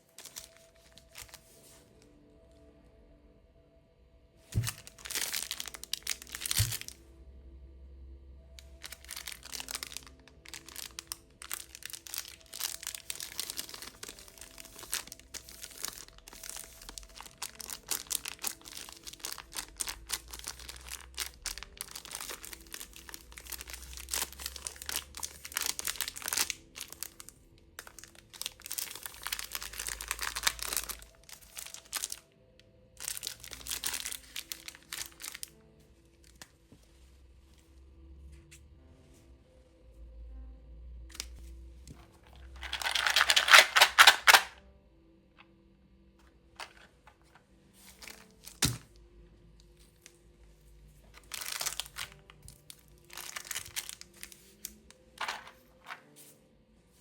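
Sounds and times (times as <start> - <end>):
plastic wrappers crinkling and tearing: 0.0 - 2.0, 4.5 - 7.0, 8.6 - 32.4, 33.0 - 36.6, 42.3 - 44.6, 46.6 - 49.0, 51.0 - 56.2.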